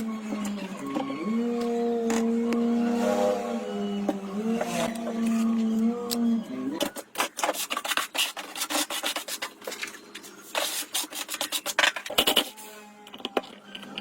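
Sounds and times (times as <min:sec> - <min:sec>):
humming tone: 0:00.0 - 0:07.0.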